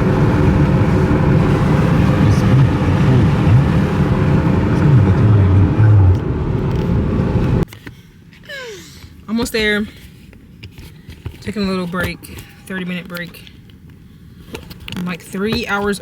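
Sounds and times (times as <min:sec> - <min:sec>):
car driving rumble: 0:00.0 - 0:07.7.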